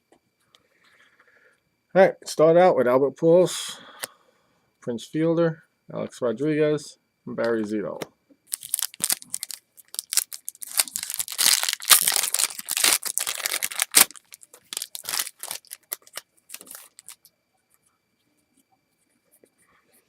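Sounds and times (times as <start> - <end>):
foil wrapper tearing and crinkling: 8.5 - 17.2.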